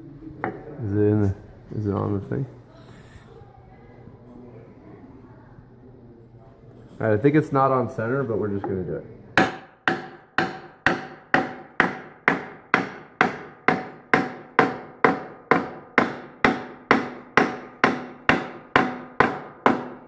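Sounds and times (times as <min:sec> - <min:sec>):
hammer striking metal: 0:09.4 - 0:20.0.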